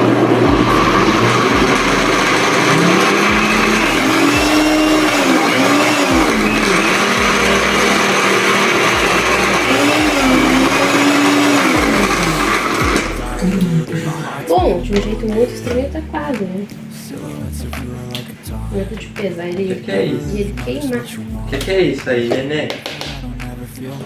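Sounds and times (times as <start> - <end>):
blender motor labouring: 0.0 - 13.8.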